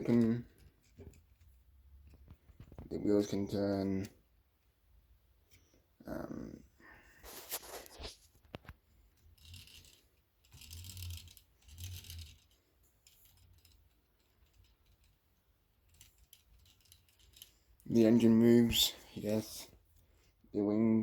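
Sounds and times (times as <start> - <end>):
plastic toy parts clicking: 9.2 - 17.9.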